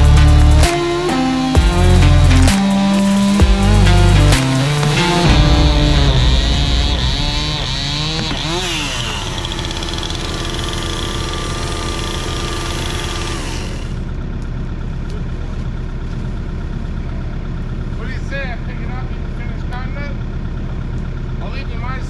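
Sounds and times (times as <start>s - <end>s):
held music chord: 0.0s - 8.6s
heavy equipment engine running: 0.0s - 19.6s.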